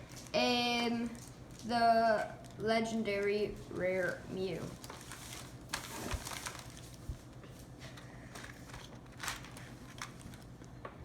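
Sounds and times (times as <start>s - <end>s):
plastic wrapper crinkling: 2.4s - 7.4s, 8.3s - 10.7s.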